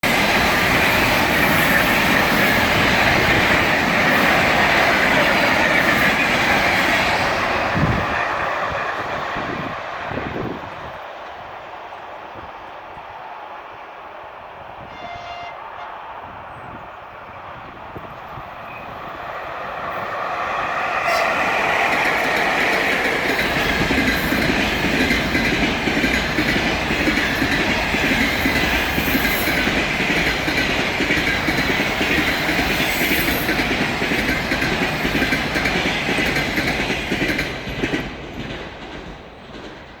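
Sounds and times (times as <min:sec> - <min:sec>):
train wheels clattering: 0:18.2 - 0:40.0.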